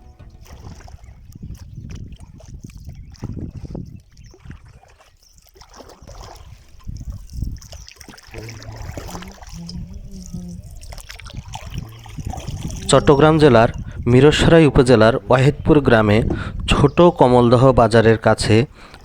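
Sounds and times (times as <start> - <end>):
wind rumble on microphone: 0.0 - 18.7
water sloshing around boat: 0.0 - 19.0
low hum shifting in pitch: 8.4 - 13.8.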